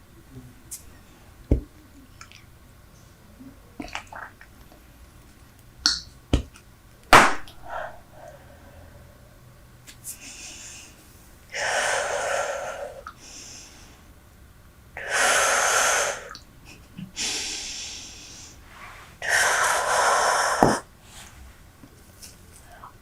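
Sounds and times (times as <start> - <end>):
long breaths close up: 7.6 - 9.6, 10.2 - 14.1, 15.0 - 16.4, 17.2 - 21.4.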